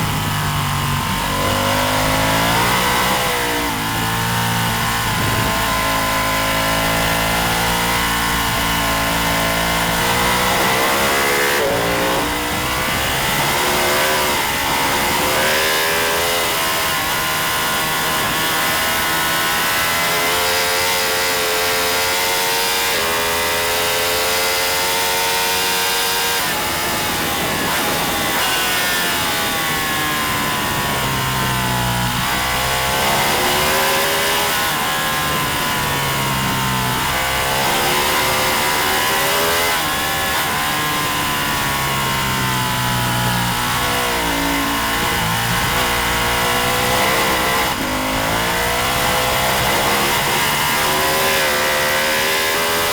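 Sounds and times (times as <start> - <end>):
racing motorcycle engine revving: 0.0 - 52.9.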